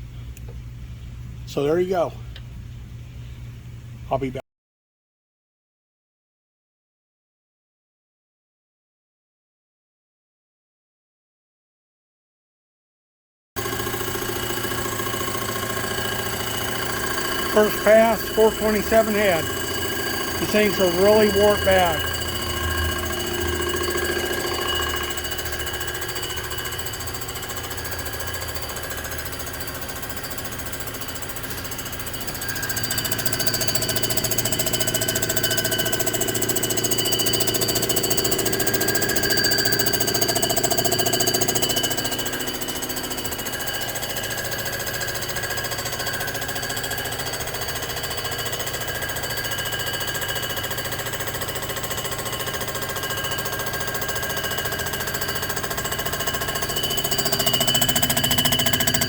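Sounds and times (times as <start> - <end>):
surfacing machine cutting metal: 13.6 - 59.0.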